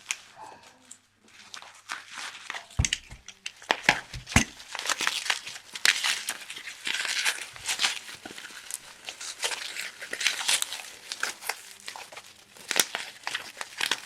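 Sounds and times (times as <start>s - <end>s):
plastic wrap crinkling: 0.9s - 14.0s
dull handling knocks: 2.8s - 3.2s, 4.1s - 4.6s.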